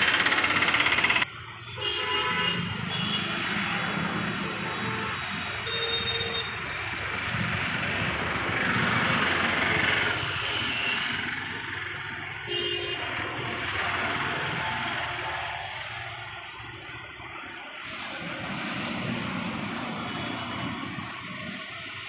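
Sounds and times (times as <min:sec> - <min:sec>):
diesel engine running: 0:00.0 - 0:01.4, 0:06.8 - 0:19.8.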